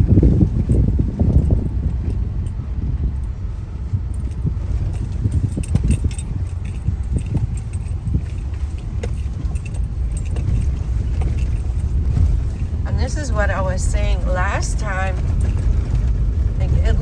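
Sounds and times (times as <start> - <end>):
tyres rumbling on dirt road: 0.0 - 17.0
loose items rattling: 4.2 - 16.2.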